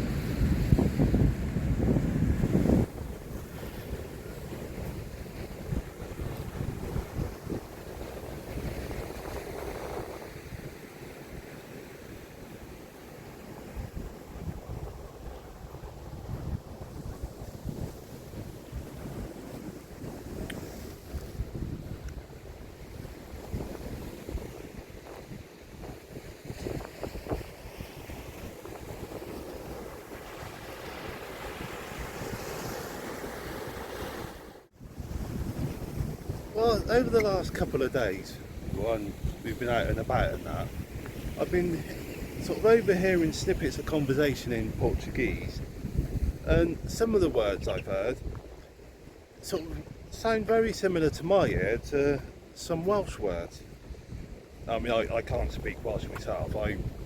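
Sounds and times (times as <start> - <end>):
wind on microphone: 0.0 - 12.7, 13.4 - 50.6, 51.4 - 57.0
sea waves washing on shore: 0.0 - 57.0.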